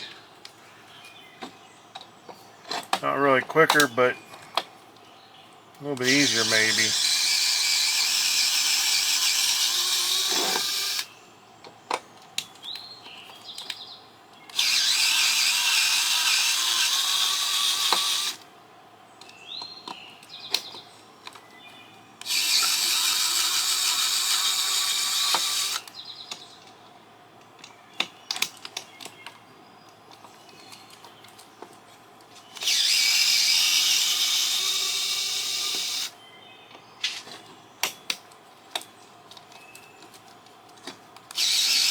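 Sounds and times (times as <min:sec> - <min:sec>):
power driver motor whirring: 0:06.0 - 0:11.1, 0:14.5 - 0:18.4, 0:22.2 - 0:25.8, 0:32.6 - 0:36.1, 0:41.3 - 0:41.9.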